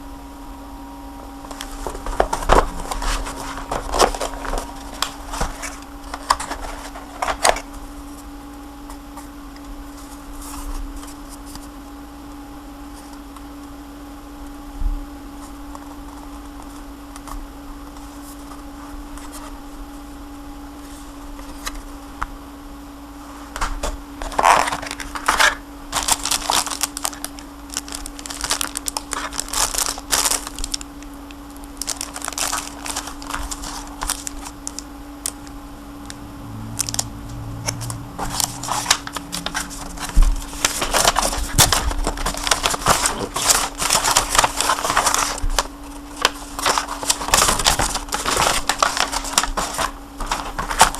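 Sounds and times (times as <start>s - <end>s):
steady low hum: 0.0s - 50.9s
packaging rustling and scraping: 1.5s - 8.2s, 23.5s - 35.4s, 37.7s - 50.9s.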